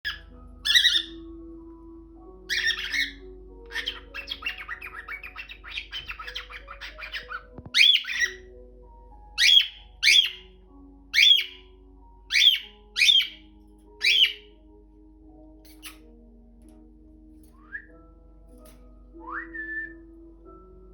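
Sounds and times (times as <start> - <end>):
cockatiel calling: 0.0 - 1.4, 2.4 - 8.5, 9.4 - 11.7, 12.3 - 14.6, 15.6 - 16.1
faint background music: 0.0 - 20.9.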